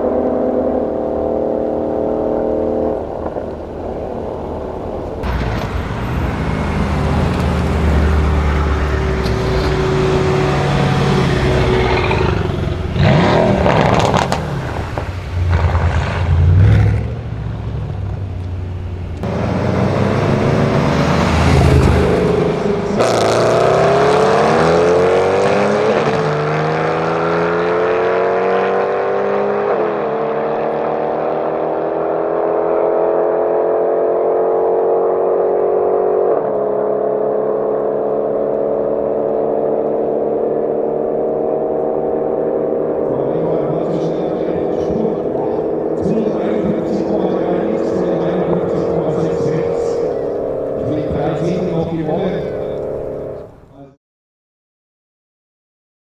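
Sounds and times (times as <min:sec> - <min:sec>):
engine revving: 0:00.0 - 0:53.6
car engine accelerating hard: 0:00.0 - 0:53.7
sharp exhaust cracks: 0:02.0 - 0:24.8, 0:43.0 - 0:53.6.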